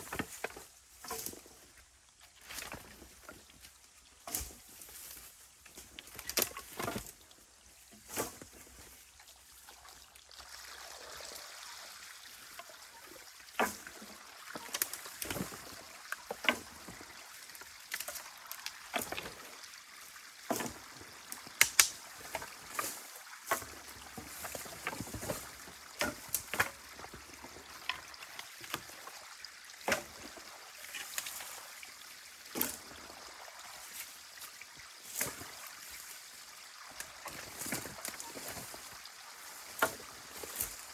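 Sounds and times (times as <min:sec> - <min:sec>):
splashes and knocks of sticks: 0:00.0 - 0:40.9
water trickling: 0:00.3 - 0:40.9.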